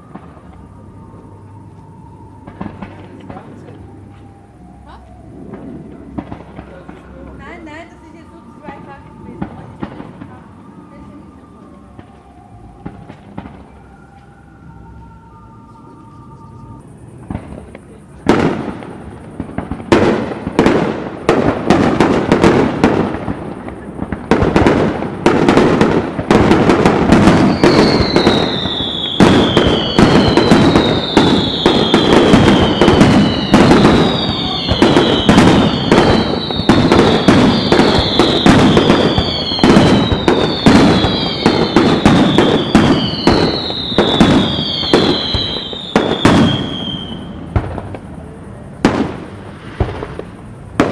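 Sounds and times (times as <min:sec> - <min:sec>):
fireworks bangs and crackles: 0:00.0 - 0:50.9
falling whistle: 0:26.6 - 0:47.3.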